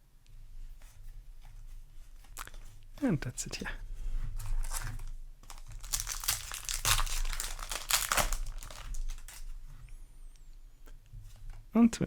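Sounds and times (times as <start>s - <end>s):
foil wrapper crinkling and tearing: 4.4s - 9.6s.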